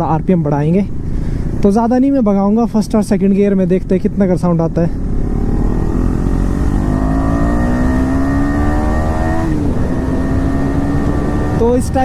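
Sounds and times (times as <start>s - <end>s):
motorcycle engine accelerating: 3.6s - 12.0s.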